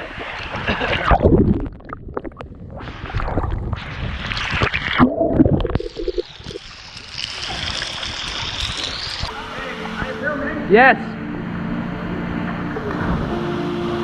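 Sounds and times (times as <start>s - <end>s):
water splashing in a pool: 0.0s - 9.3s.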